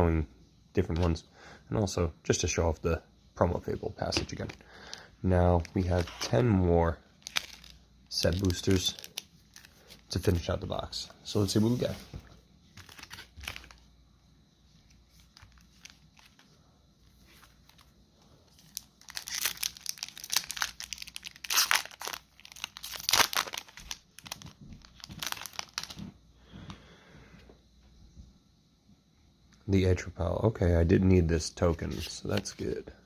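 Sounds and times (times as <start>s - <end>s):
wrapper tearing and crinkling: 7.2s - 9.9s, 12.8s - 13.8s, 18.6s - 26.0s.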